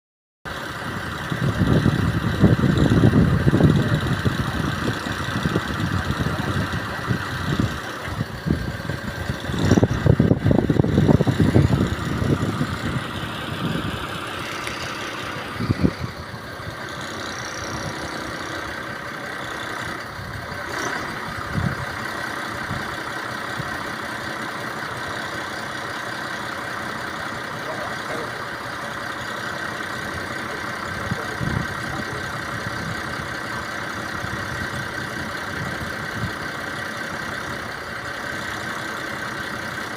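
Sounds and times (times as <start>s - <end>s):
engine running: 0.5s - 39.9s
low uneven rumbles: 0.8s - 25.8s.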